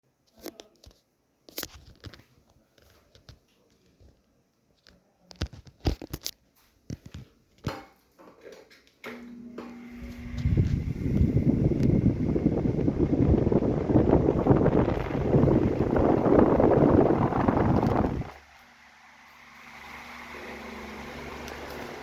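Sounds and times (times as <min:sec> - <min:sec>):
fan being handled clicks: 0:09.0 - 0:13.3
fan motor hum: 0:09.1 - 0:22.0
fan air rushing: 0:09.4 - 0:22.0.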